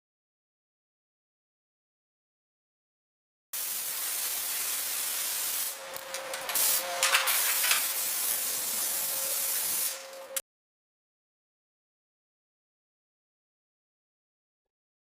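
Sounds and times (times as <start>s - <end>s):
hissing spray: 3.6s - 10.3s.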